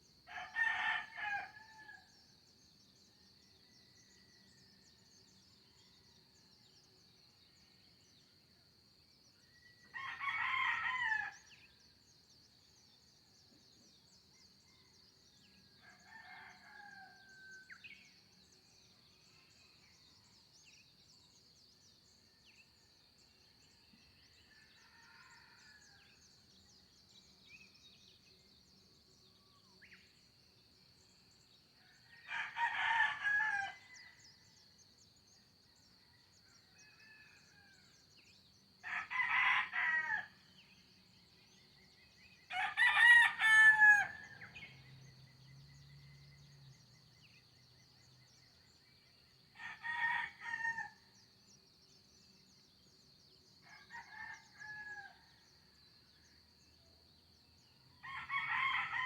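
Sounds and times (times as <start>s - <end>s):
rooster crowing: 42.5s - 44.4s.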